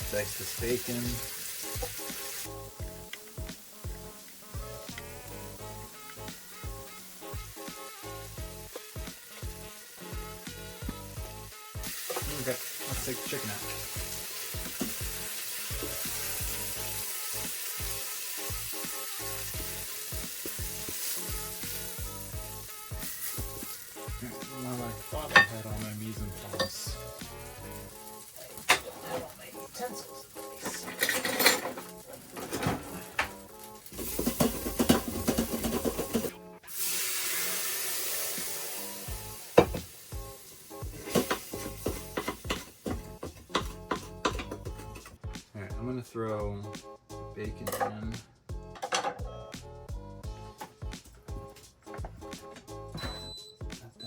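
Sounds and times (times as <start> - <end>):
steady hiss: 0.0 - 28.7, 36.6 - 42.9
chicken sizzling in a pan: 0.0 - 45.0
background music: 0.0 - 54.0
scraping and clattering on wood: 30.7 - 33.4.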